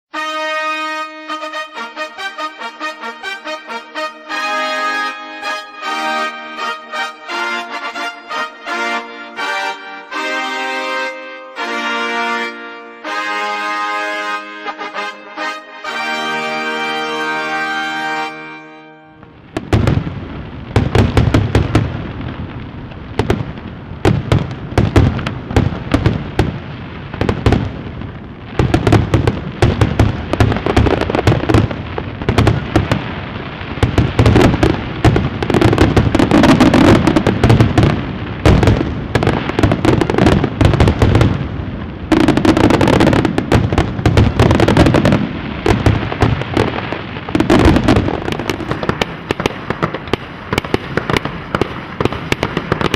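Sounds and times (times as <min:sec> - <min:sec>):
firework bursts and crackling pops: 0:00.1 - 0:18.2, 0:19.2 - 0:52.9
low booming bangs: 0:19.2 - 0:52.9.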